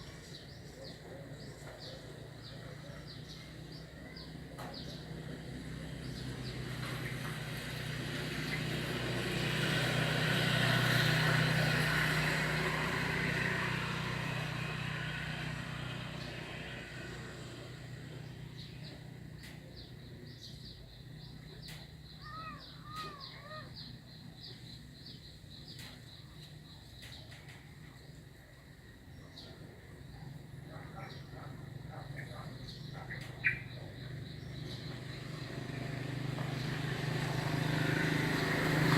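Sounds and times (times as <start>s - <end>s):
vehicle passing by: 0.0s - 26.2s, 30.2s - 38.9s
warbling bird call: 22.1s - 23.9s, 31.9s - 34.0s.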